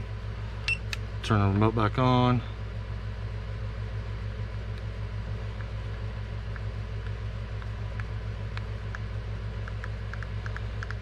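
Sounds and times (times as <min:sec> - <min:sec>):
machine hum with flutter: 0:00.0 - 0:11.0.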